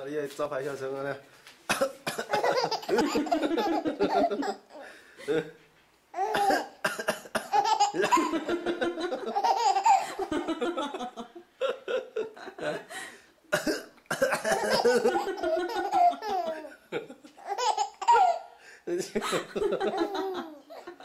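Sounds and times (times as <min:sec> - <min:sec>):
baby coughing: 0:01.7 - 0:04.2, 0:06.2 - 0:08.4, 0:13.5 - 0:16.6, 0:17.5 - 0:18.4
baby laughing: 0:02.2 - 0:04.9, 0:07.5 - 0:11.1, 0:14.4 - 0:18.6, 0:19.4 - 0:21.0.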